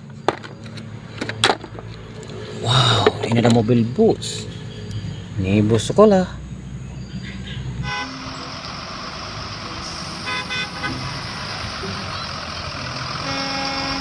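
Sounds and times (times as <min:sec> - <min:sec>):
toy horn toots: 0:07.8 - 0:08.4, 0:10.2 - 0:11.1, 0:13.2 - 0:14.0.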